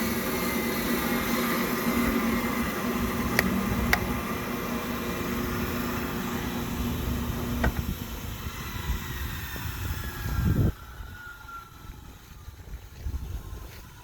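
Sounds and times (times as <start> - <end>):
band sawmill humming and whining: 0.0 - 14.0
sharp clicks: 3.2 - 4.3.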